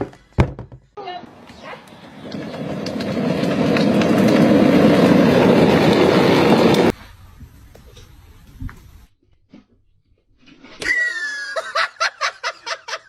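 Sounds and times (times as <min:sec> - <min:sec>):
loud rushing rumble: 0:01.9 - 0:07.0.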